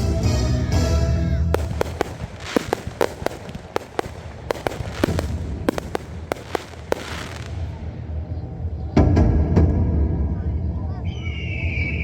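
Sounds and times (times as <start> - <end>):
music: 0.0 - 2.0, 8.3 - 11.1
fireworks popping and cracking: 1.5 - 7.9.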